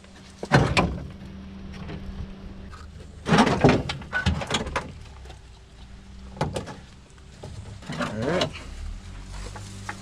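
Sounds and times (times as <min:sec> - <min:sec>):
steady low hum: 0:00.0 - 0:10.0
bumper knocks and clatters: 0:03.2 - 0:05.5.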